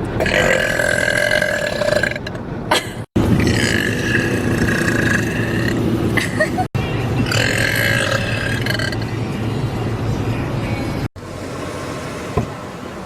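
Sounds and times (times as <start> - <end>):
woman burping: 0.2 - 6.7.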